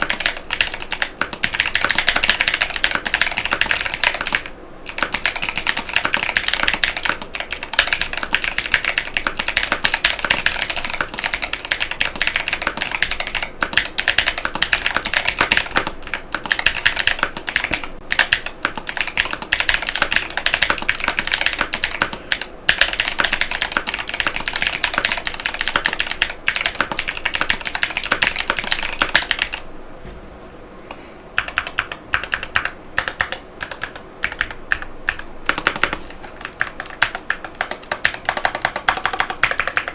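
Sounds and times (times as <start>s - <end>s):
mechanical keyboard typing: 0.0s - 29.6s, 31.4s - 39.9s.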